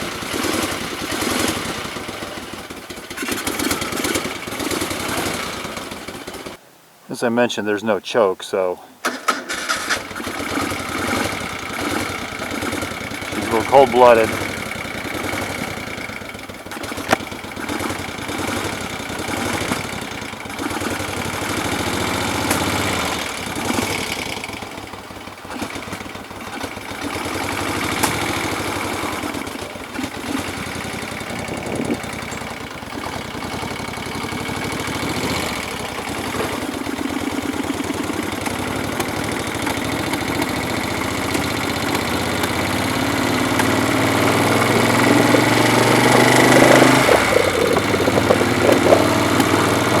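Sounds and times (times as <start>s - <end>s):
motorcycle engine idling unevenly: 0.0s - 6.6s, 9.1s - 50.0s.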